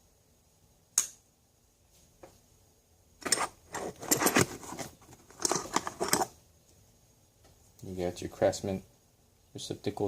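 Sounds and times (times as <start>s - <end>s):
tools clinking in bag: 3.2s - 6.3s.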